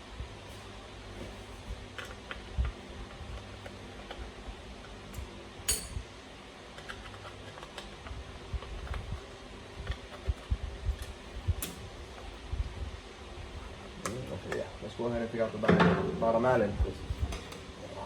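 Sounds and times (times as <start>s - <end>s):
low steady hum: 0.0s - 18.0s
metal tools clicking and clinking: 5.7s - 6.0s.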